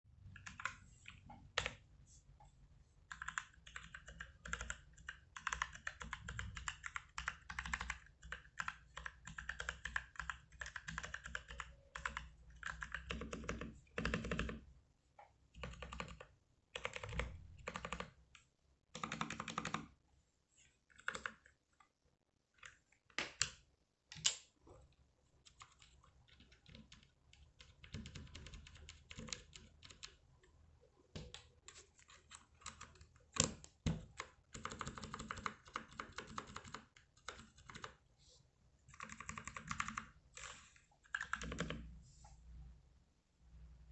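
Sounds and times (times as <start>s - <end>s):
mechanical keyboard typing: 0.2s - 1.8s, 3.0s - 14.7s, 15.5s - 20.0s, 20.9s - 21.6s, 25.4s - 30.3s, 31.1s - 38.0s, 38.9s - 41.9s.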